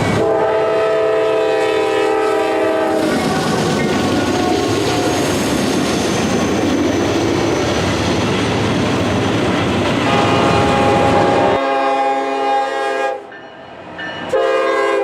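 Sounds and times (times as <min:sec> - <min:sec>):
wheels rushing on rail: 0:00.0 - 0:15.0
locomotive air horn: 0:00.1 - 0:03.1, 0:10.0 - 0:13.3, 0:14.3 - 0:15.0.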